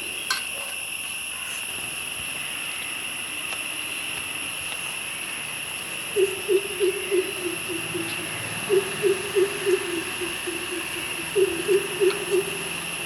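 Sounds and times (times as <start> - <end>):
high insect drone: 0.0 - 13.0
bird deep hoots: 6.1 - 13.0.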